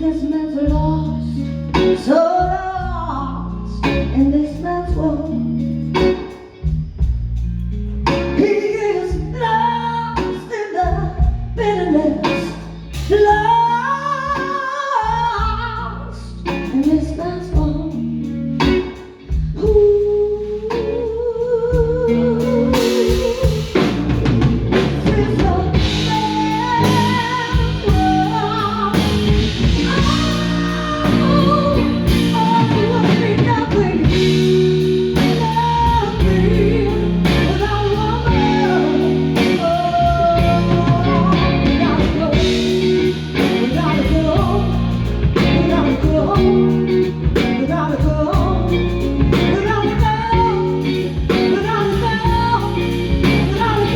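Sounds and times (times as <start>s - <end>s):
band playing soul-blues ballad: 0.0s - 53.9s
lead guitar with bends: 17.5s - 53.9s.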